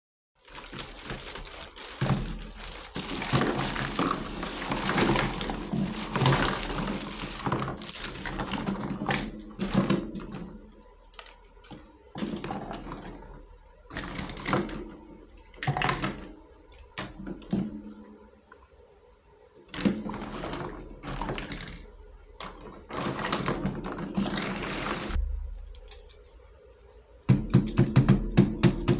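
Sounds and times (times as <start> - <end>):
packaging crinkling: 0.4 - 13.4.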